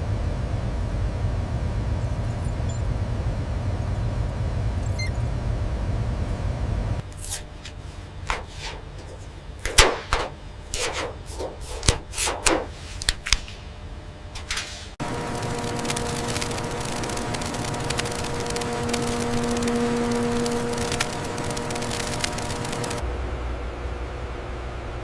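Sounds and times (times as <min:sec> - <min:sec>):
low machine rumble: 0:00.0 - 0:07.0, 0:15.0 - 0:25.0
machine hum: 0:00.0 - 0:11.8, 0:15.0 - 0:25.0
steady tones: 0:15.0 - 0:23.1.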